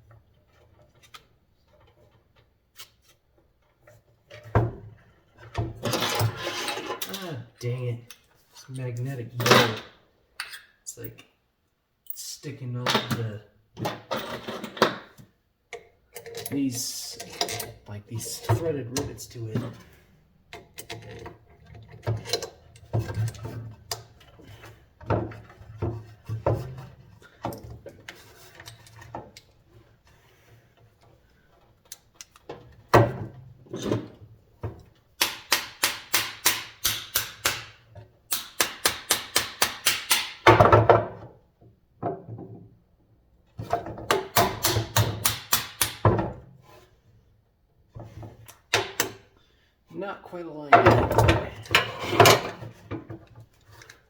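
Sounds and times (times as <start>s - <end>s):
metal hardware clicking and knocking: 12.8s - 16.6s, 20.5s - 24.3s.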